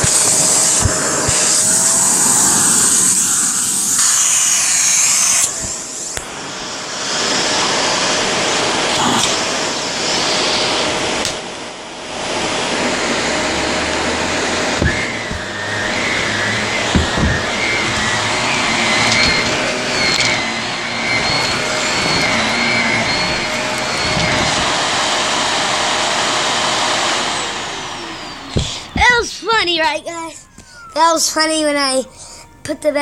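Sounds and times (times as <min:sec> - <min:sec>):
vacuum motor winding down: 0:00.0 - 0:29.3
vacuum cleaner running: 0:00.0 - 0:31.2
knocks: 0:14.8 - 0:18.4.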